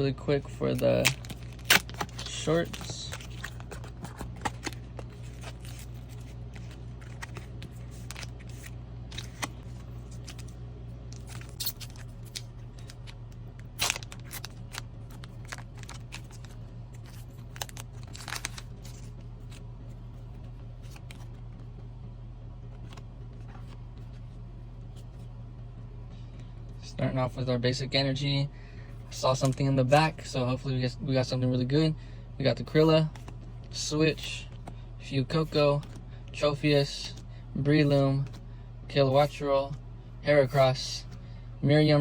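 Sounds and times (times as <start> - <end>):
low hum: 0.0 - 42.0
foil wrapper tearing and crinkling: 0.9 - 3.8, 11.2 - 16.6, 17.4 - 18.8.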